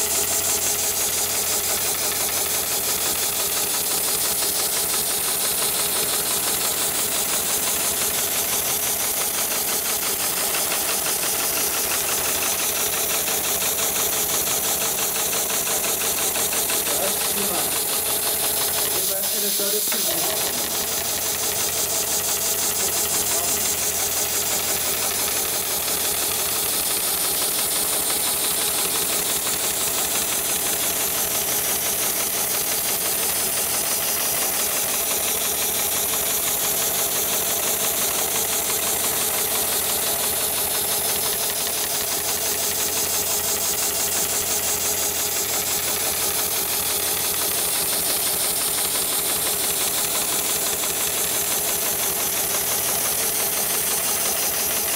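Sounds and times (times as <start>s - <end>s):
stitching machine running: 0.0s - 54.9s.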